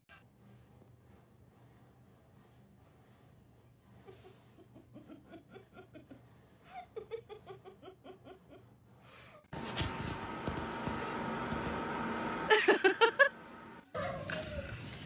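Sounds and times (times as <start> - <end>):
person laughing softly: 12.4 - 13.6.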